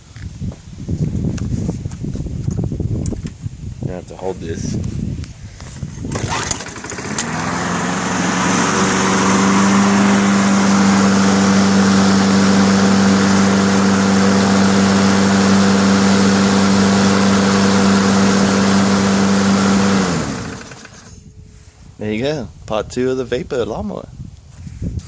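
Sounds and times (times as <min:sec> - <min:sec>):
lawn mower engine running: 0:05.8 - 0:21.2.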